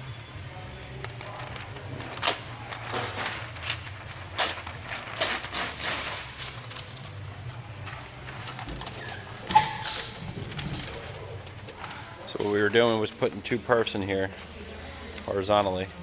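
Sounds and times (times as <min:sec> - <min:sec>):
machinery humming: 0:07.2 - 0:12.4.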